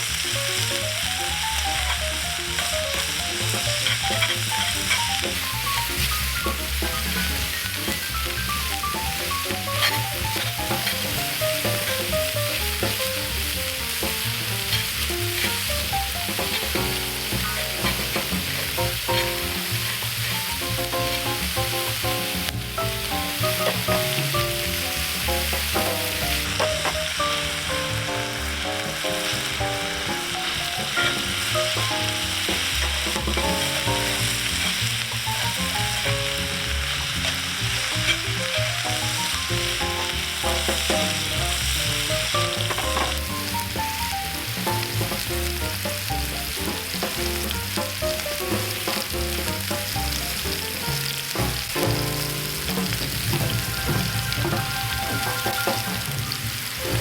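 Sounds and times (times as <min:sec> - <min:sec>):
food sizzling: 0:00.0 - 0:57.0
melodic background music: 0:52.0 - 0:57.0.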